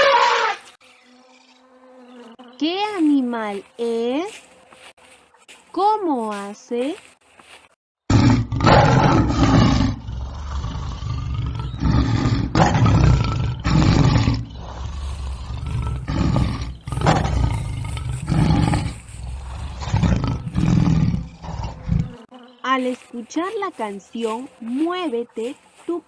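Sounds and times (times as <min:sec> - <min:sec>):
big cat roaring and growling: 0:08.1 - 0:22.2.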